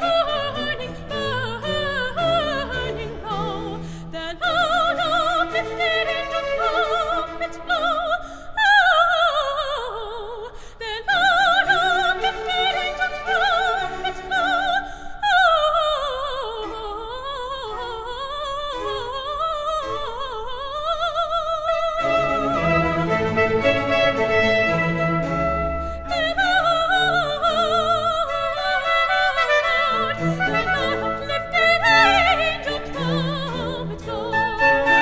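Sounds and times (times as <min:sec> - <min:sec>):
light orchestral accompaniment: 0:00.0 - 0:08.4, 0:11.3 - 0:15.0, 0:21.7 - 0:35.0
operatic soprano singing: 0:00.0 - 0:35.0.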